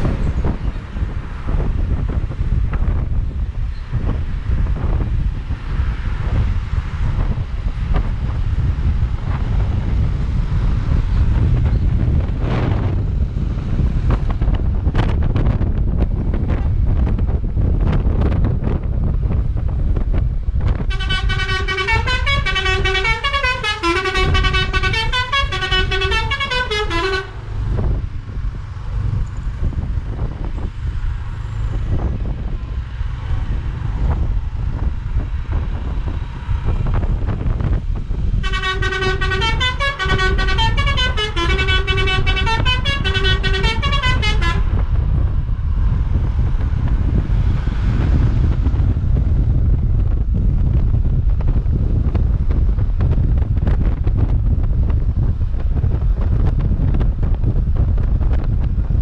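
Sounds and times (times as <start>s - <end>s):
wind rumble on microphone: 0.0s - 59.0s
bus air horns playing tune: 20.9s - 27.5s, 38.4s - 44.8s.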